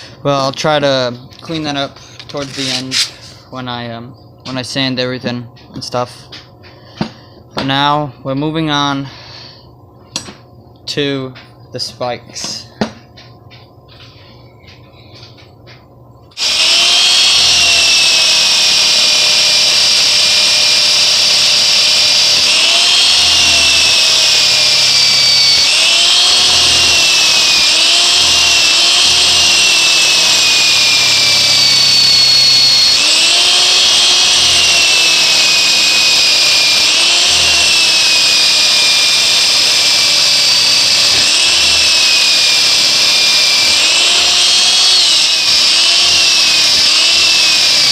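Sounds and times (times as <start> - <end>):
power wire brush scouring metal: 16.4 - 47.9.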